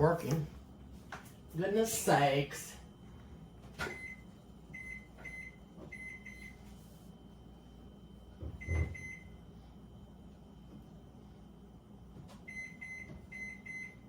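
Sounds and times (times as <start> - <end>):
microwave keypad beeps: 3.9 - 6.6, 8.6 - 9.4, 12.5 - 14.0.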